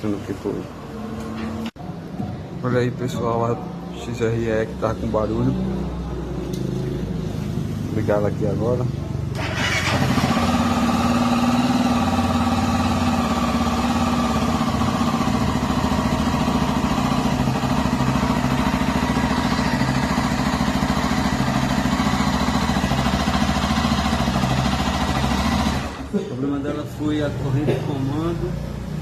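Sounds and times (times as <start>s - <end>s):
engine mechanical noise: 4.6s - 29.0s
motorcycle engine idling: 9.3s - 26.1s.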